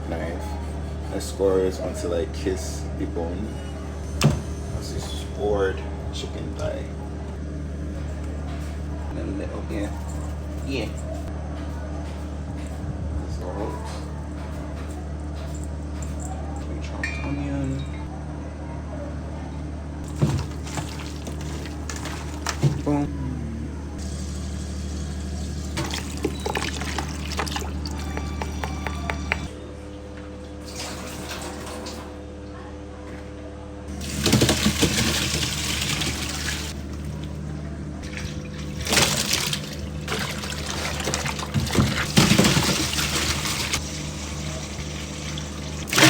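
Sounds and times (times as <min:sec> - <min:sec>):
water running: 0:20.1 - 0:23.0, 0:24.0 - 0:29.5, 0:34.0 - 0:46.0.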